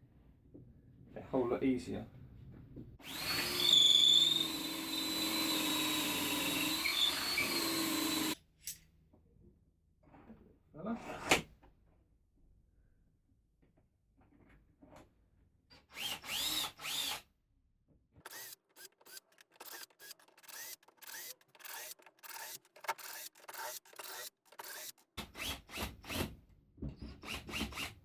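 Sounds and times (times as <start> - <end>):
power drill drilling into timber: 3.0 - 8.4, 15.9 - 17.2, 18.2 - 26.3.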